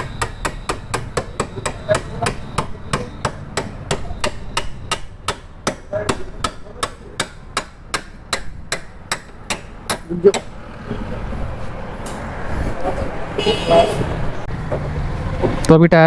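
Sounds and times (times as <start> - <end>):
hammer tapping on metal: 0.0 - 10.6.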